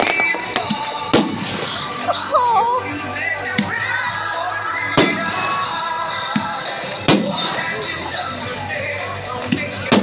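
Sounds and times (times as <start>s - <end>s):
fireworks bangs: 0.0s - 1.9s, 4.9s - 7.7s
music playing: 0.0s - 10.0s.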